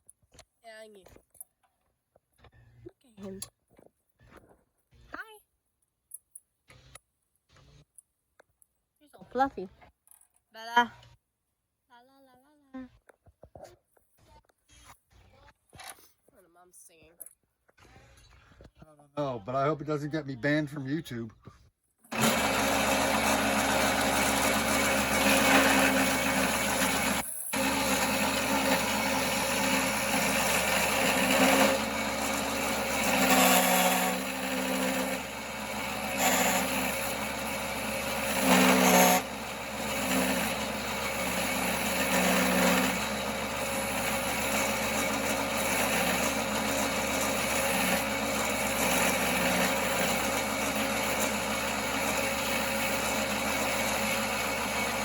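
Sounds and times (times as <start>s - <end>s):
tool cutting spinning wood: 22.0s - 55.0s
wood lathe running: 22.1s - 55.0s.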